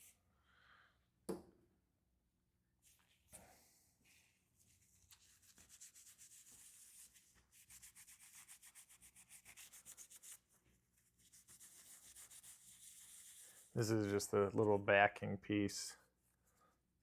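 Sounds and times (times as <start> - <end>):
scrubbing strokes on metal part: 11.2 - 14.2.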